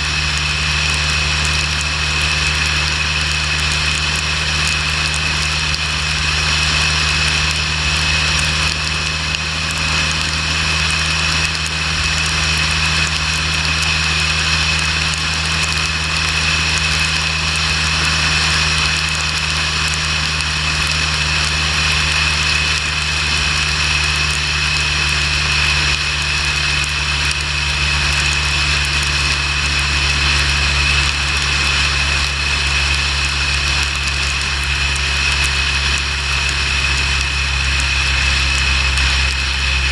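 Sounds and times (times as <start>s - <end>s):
motorcycle engine drone: 0.0s - 39.9s.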